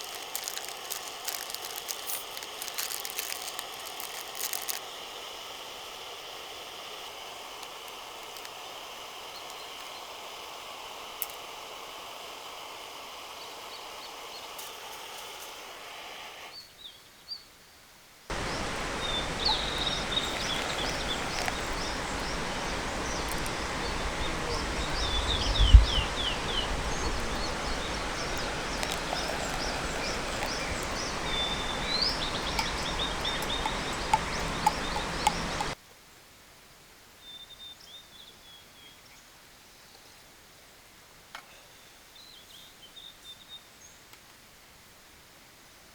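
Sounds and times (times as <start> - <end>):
songbirds chirping: 16.5 - 35.8
river water rushing: 18.3 - 35.8.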